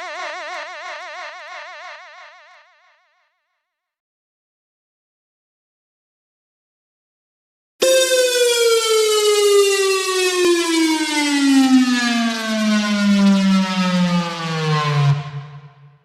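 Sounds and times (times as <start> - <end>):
wailing tone gliding down in pitch: 7.8 - 16.0.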